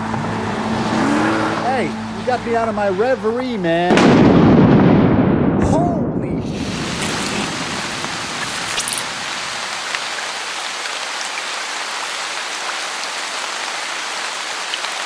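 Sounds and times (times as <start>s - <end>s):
heavy rain falling: 6.4s - 15.0s.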